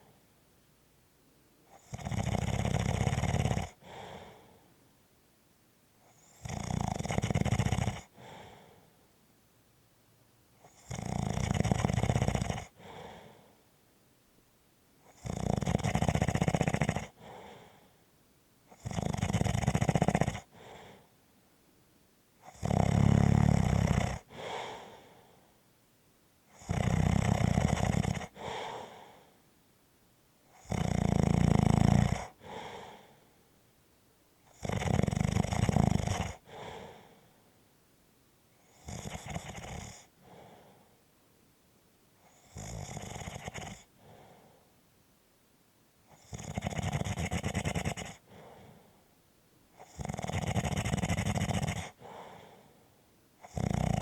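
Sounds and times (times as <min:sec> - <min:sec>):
person snoring: 0:01.7 - 0:04.5, 0:06.1 - 0:08.8, 0:10.6 - 0:13.4, 0:15.1 - 0:17.9, 0:18.7 - 0:21.0, 0:22.4 - 0:25.2, 0:26.5 - 0:29.2, 0:30.6 - 0:33.1, 0:34.5 - 0:37.2, 0:38.7 - 0:40.8, 0:42.3 - 0:44.6, 0:46.1 - 0:48.9, 0:49.8 - 0:52.7, 0:53.4 - 0:54.0
soft breath: 0:03.7 - 0:04.9, 0:08.0 - 0:09.2, 0:12.7 - 0:13.8, 0:17.1 - 0:18.2, 0:20.4 - 0:21.3, 0:24.2 - 0:25.7, 0:28.1 - 0:29.6, 0:32.3 - 0:33.6, 0:36.3 - 0:37.7, 0:40.0 - 0:41.2, 0:43.4 - 0:44.8, 0:48.0 - 0:49.2, 0:51.8 - 0:53.2.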